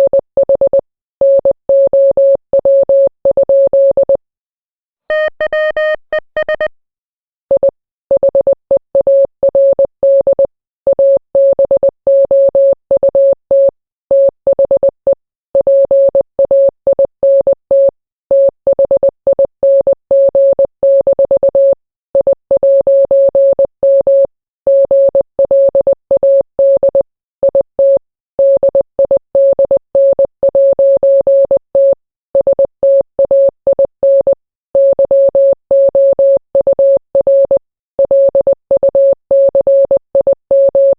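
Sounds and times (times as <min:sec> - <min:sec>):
morse code beeps: 0:05.1 - 0:06.8, 0:31.4 - 0:40.9.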